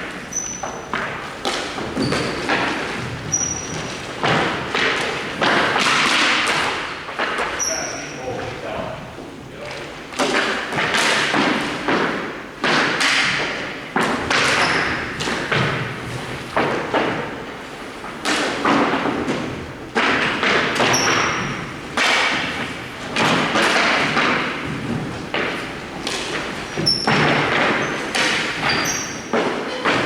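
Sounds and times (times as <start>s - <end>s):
high squeaks: 0.3s - 0.9s, 3.3s - 3.8s, 26.6s - 27.2s, 27.8s - 29.9s
hockey shots thudding: 0.6s - 7.6s, 10.2s - 30.0s.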